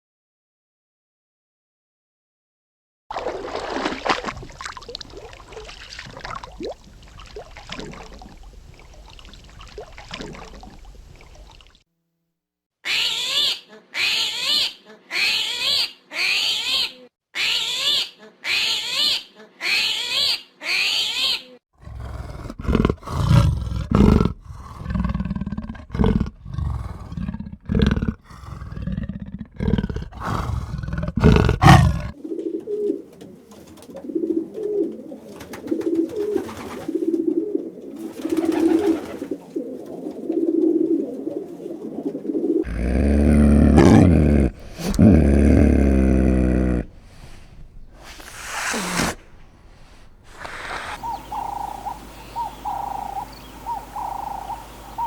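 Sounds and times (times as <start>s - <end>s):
deep rumbling animal roars: 21.8s - 32.2s, 42.6s - 48.4s
low animal call: 21.8s - 32.2s, 42.6s - 55.0s.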